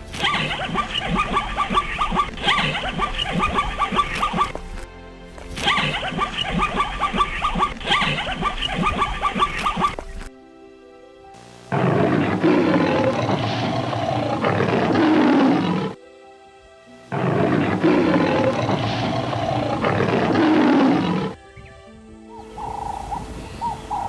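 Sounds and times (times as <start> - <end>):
background music: 0.0 - 24.0
large animal roaring: 11.7 - 16.0, 17.1 - 21.4.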